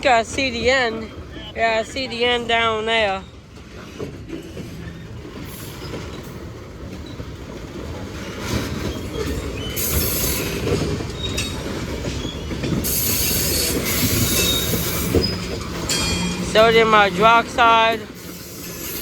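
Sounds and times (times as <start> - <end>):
train wheels rumbling on rail: 0.0 - 19.0
wheel squeals: 8.1 - 19.0.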